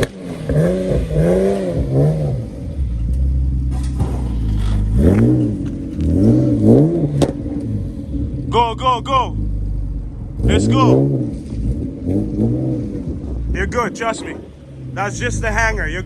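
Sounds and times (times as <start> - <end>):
car engine revving: 0.0 - 16.0.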